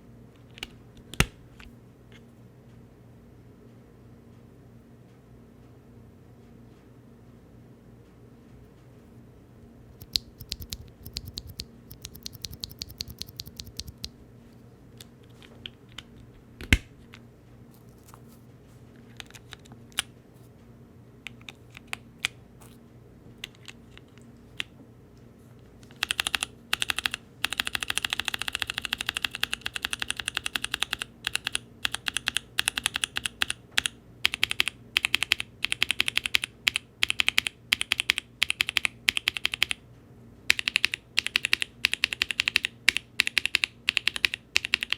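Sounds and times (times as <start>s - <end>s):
mechanical keyboard typing: 10.0s - 14.1s, 25.9s - 39.8s, 40.5s - 44.9s.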